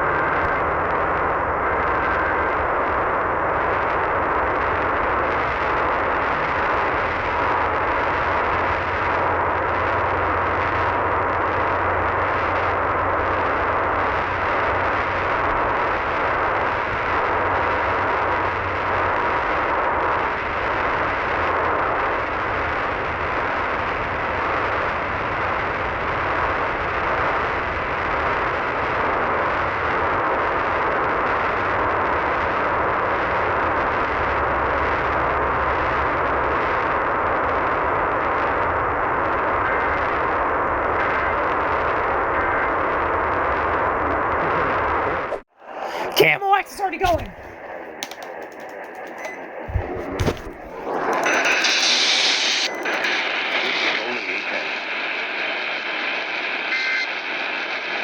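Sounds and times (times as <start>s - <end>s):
radio static hiss: 44.2s - 58.0s
faint steady whistle: 56.5s - 57.9s.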